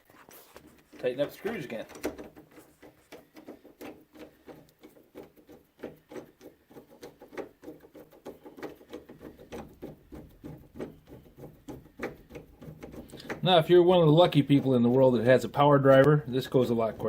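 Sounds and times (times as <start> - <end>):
screwdriver clicking and scraping: 0.0 - 13.4.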